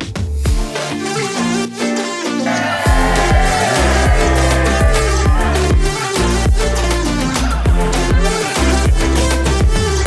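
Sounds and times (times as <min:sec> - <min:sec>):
kick drum beat: 0:02.9 - 0:06.7.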